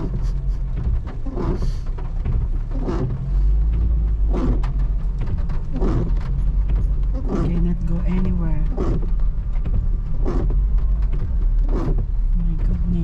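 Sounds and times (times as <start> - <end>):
car engine and cabin rumble: 0.0 - 13.0.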